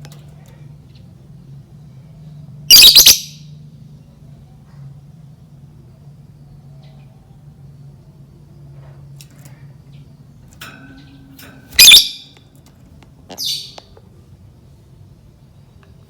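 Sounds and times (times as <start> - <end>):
bird squawking: 2.7 - 3.4, 11.8 - 12.3
bird chirping: 2.7 - 3.5, 9.9 - 12.4, 13.3 - 13.9.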